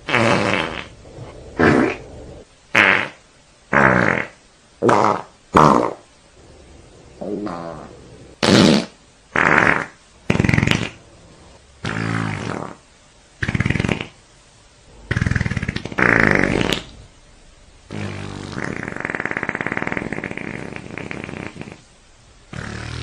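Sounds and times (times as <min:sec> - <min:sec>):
fart sound effects: 0:00.0 - 0:06.0, 0:07.2 - 0:11.0, 0:11.8 - 0:12.8, 0:13.4 - 0:14.2, 0:15.1 - 0:17.0, 0:17.9 - 0:21.8, 0:22.5 - 0:23.0.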